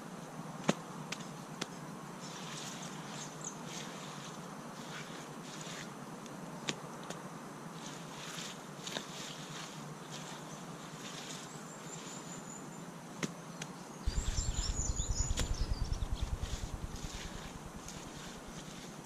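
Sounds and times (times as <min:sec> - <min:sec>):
high bird chirps: 0:14.1 - 0:17.8
wind buffeting microphone: 0:14.1 - 0:18.5.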